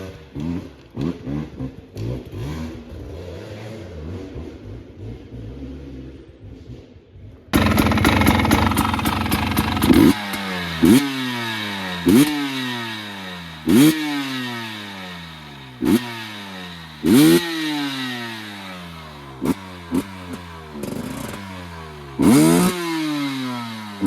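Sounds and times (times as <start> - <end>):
two-stroke engine revving: 7.5 - 24.0.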